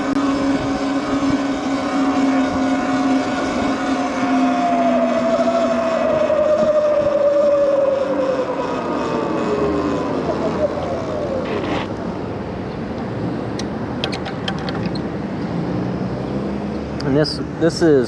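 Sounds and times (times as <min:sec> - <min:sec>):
electric bike motor whining: 0:00.0 - 0:12.5
wind noise: 0:00.0 - 0:15.3.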